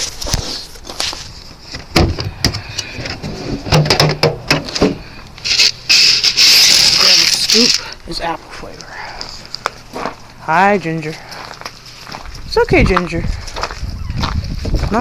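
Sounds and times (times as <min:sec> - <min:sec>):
rush of dry corn kernels: 0:05.5 - 0:07.8.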